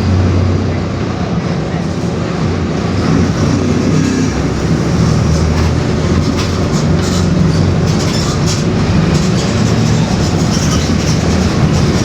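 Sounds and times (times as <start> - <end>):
bus drivetrain hum: 0.0 - 12.0
growling rear differential: 2.8 - 12.0.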